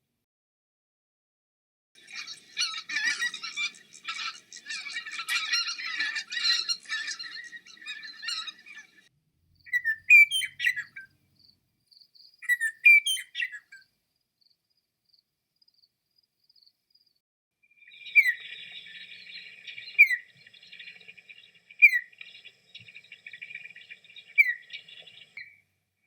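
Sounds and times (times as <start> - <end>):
bird song phrases: 2.0 - 13.9, 17.7 - 25.8
songbirds chirping: 2.0 - 14.6, 17.7 - 25.8.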